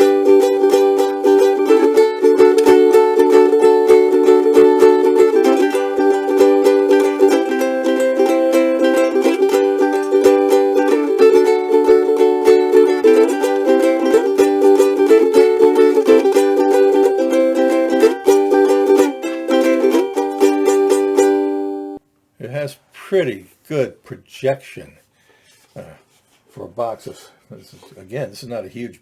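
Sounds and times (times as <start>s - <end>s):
ukulele strummed in chords: 0.0s - 22.0s.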